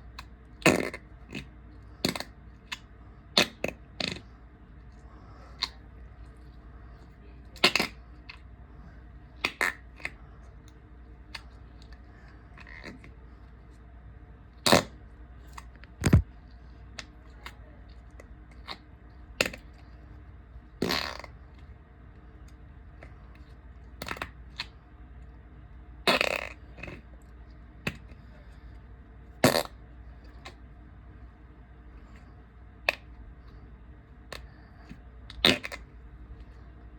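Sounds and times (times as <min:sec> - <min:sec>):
fart noises: 0:00.6 - 0:02.3, 0:14.6 - 0:15.0, 0:16.0 - 0:16.2, 0:20.8 - 0:21.4, 0:26.0 - 0:27.0, 0:29.4 - 0:29.8, 0:35.4 - 0:35.8.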